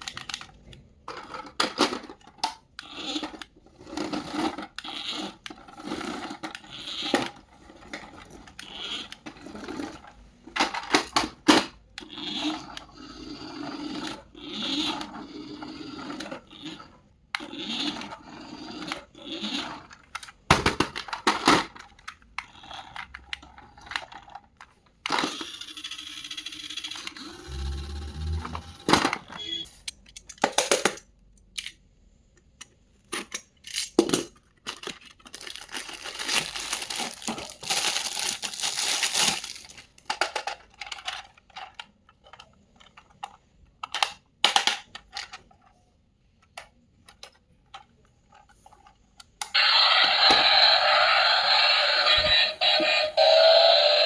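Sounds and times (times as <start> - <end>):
plastic and cardboard rustling: 34.6 - 41.3.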